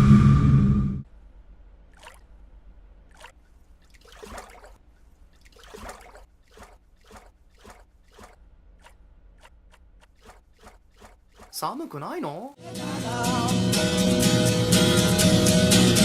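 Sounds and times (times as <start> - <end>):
water dripping and splashing: 1.9 - 2.3, 3.0 - 11.9.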